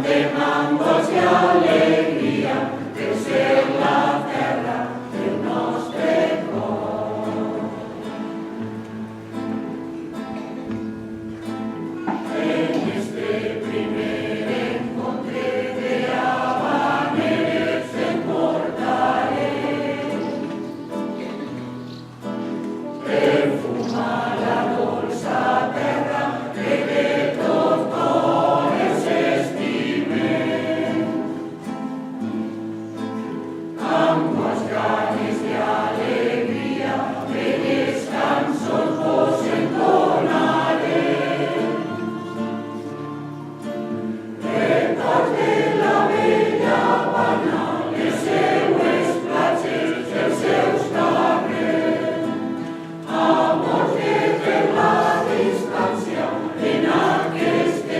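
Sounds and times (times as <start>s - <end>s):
choir singing: 0.0s - 57.9s.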